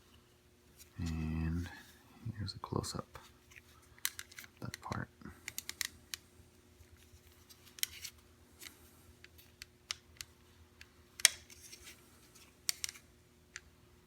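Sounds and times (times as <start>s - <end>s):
plastic parts clicking and tapping: 12.6s - 13.6s.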